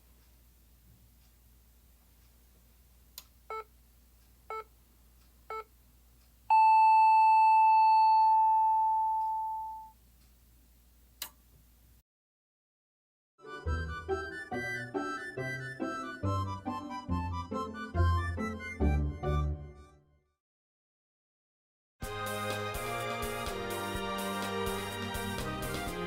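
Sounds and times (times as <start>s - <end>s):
electronic time signal beeps: 6.5s - 9.9s
click: 11.2s - 11.4s.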